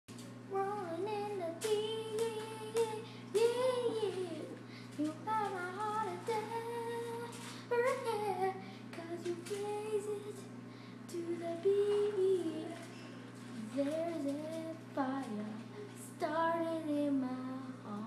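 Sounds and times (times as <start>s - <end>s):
steady low hum: 0.1s - 18.0s
high voice singing wordless melody: 0.5s - 18.0s.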